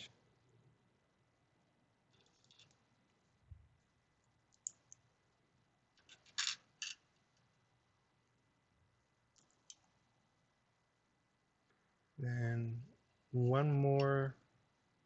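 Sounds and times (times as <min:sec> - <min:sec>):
plastic bricks clicking together: 0:04.5 - 0:05.0.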